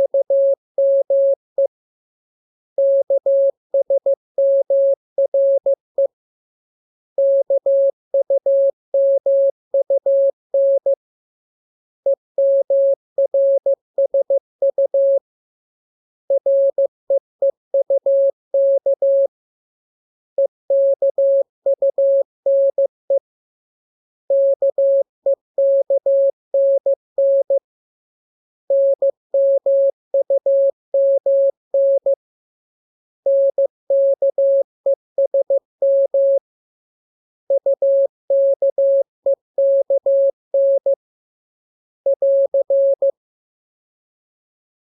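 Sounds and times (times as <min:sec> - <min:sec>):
morse code beeps: 0:00.0 - 0:01.4, 0:28.7 - 0:32.2, 0:33.3 - 0:36.4, 0:37.5 - 0:41.0, 0:42.1 - 0:43.2.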